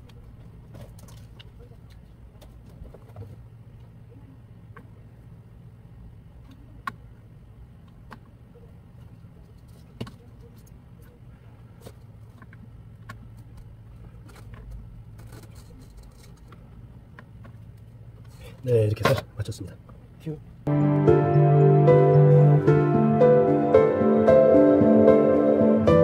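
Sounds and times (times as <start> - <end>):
low hum: 20.6 - 26.0.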